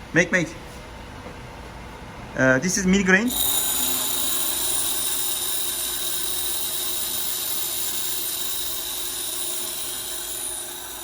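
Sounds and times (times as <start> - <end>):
lathe high-pitched whine: 3.3 - 11.0.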